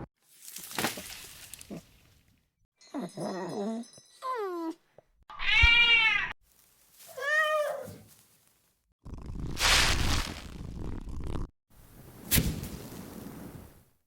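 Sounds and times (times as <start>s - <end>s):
cat meowing: 5.3s - 6.4s, 7.1s - 8.0s.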